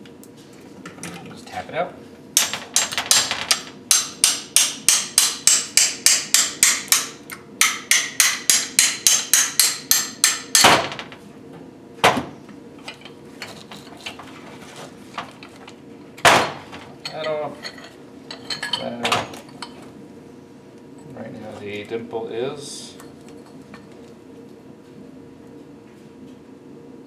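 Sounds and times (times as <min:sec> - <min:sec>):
hammer striking metal: 0:02.4 - 0:11.2.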